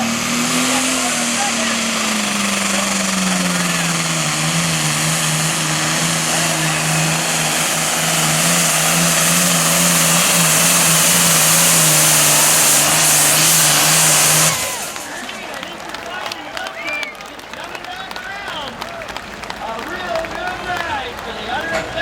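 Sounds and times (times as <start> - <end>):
engine hiss: 0.0 - 16.8
diesel engine running hard: 0.0 - 22.0.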